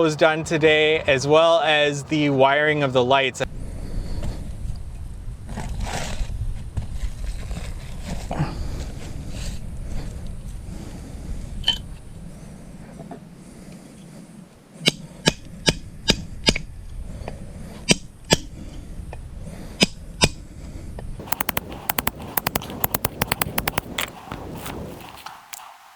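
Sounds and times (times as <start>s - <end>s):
rattle of fast clicks: 21.2s - 24.2s.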